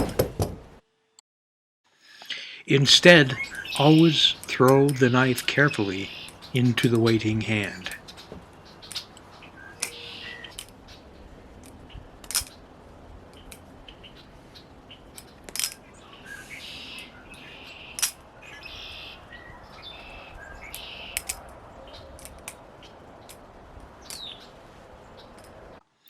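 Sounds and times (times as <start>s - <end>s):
birds chirping: 2.1s - 25.8s
butterfly knife clicking: 18.0s - 18.2s, 20.7s - 21.4s.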